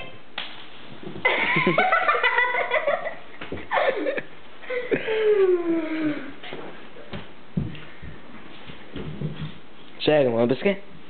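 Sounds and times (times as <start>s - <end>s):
person giggling and laughing: 1.2s - 6.2s.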